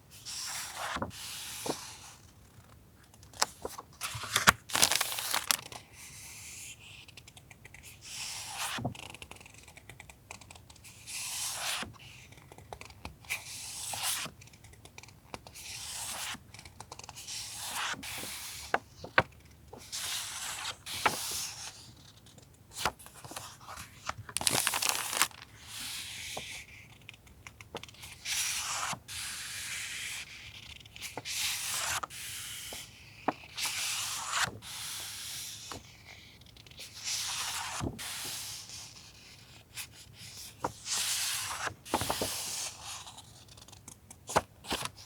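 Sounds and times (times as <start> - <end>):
paper rustling and sliding: 0.3 - 2.1, 3.3 - 5.8, 17.3 - 26.6, 40.4 - 43.2.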